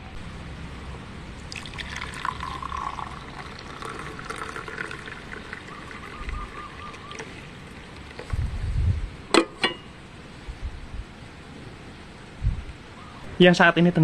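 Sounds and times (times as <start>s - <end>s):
liquid trickling while poured: 1.4s - 8.5s.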